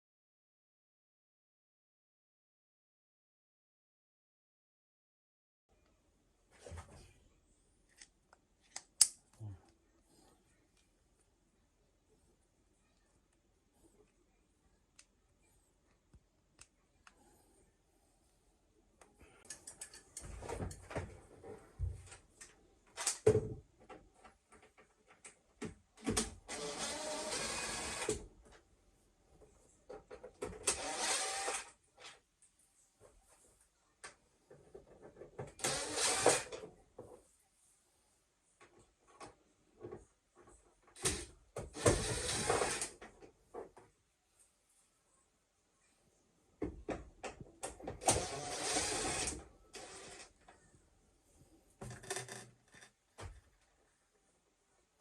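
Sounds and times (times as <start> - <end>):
small electric motor whirring: 26.5 - 28.1, 30.7 - 31.7, 48.0 - 50.3.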